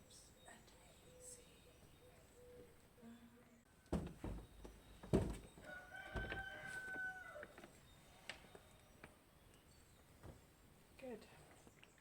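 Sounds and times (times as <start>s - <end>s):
rooster crowing: 5.6s - 7.6s.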